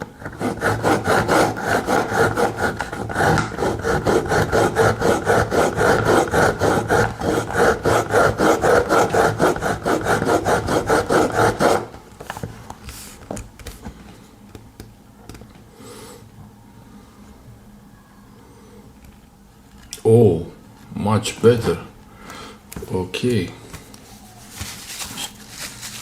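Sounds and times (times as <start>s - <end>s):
faint handling sounds: 22.7s - 26.0s.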